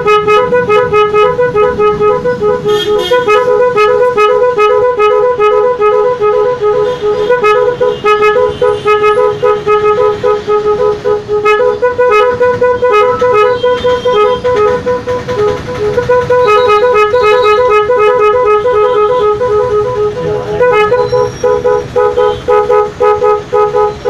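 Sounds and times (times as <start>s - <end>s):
horn playing two-note tune: 0.0s - 24.0s.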